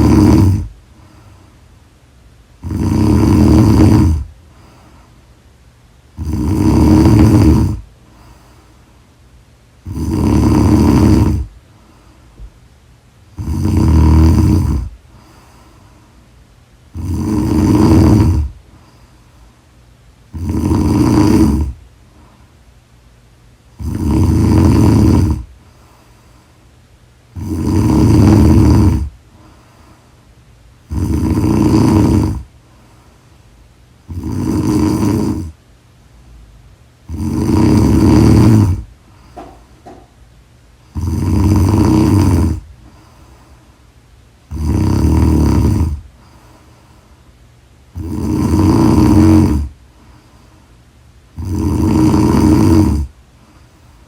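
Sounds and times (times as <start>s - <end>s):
woman snoring: 0.0s - 0.8s, 2.6s - 4.3s, 6.2s - 8.3s, 9.8s - 11.5s, 13.3s - 15.0s, 16.9s - 18.6s, 20.3s - 21.8s, 23.8s - 25.5s, 27.3s - 29.2s, 30.8s - 32.5s, 34.1s - 35.6s, 37.0s - 40.0s, 40.9s - 42.7s, 44.5s - 46.1s, 47.9s - 49.8s, 51.3s - 53.2s.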